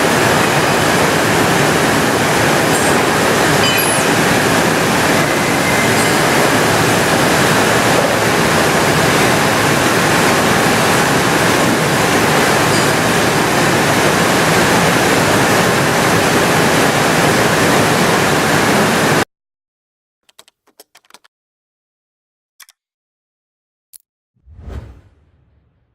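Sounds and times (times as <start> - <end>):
lathe running with coolant spraying: 0.0 - 19.2
short low whoosh: 24.5 - 25.9.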